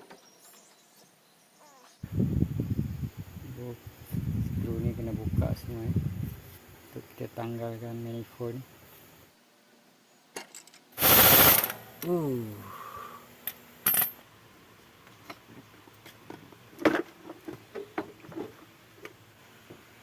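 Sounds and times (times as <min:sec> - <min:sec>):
loud short burst: 0:11.0 - 0:12.0.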